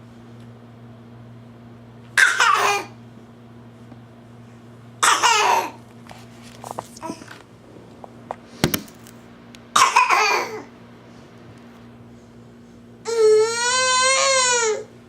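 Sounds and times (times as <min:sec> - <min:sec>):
person fake coughing: 0:02.2 - 0:03.0, 0:05.0 - 0:05.8, 0:09.8 - 0:10.7.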